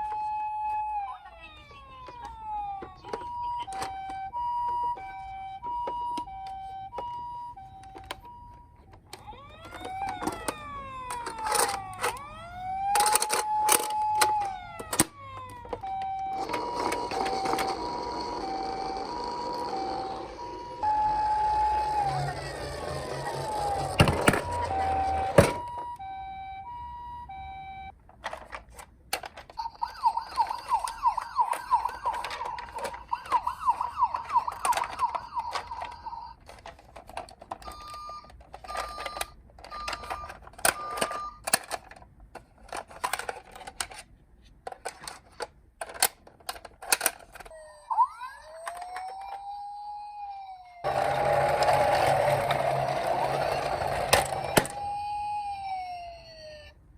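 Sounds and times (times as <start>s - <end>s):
toy siren hi-lo call: 0.0s - 27.9s, 29.6s - 36.4s, 37.6s - 41.4s, 47.4s - 56.8s
toy siren rising and falling: 0.0s - 27.9s, 29.5s - 36.6s, 37.4s - 41.6s, 47.0s - 56.8s
toy siren warbling wail: 0.0s - 27.9s, 29.5s - 36.6s, 37.6s - 41.5s, 47.4s - 56.8s
plastic toy clicks: 12.9s - 15.1s, 28.2s - 47.6s.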